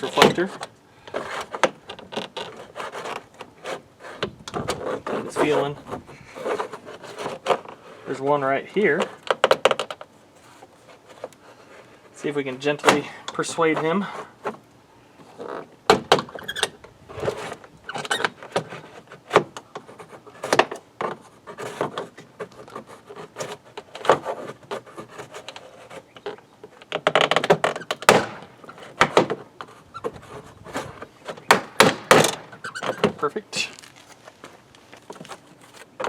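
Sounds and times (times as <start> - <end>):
plastic trim tool prying door panel: 31.2 - 33.2.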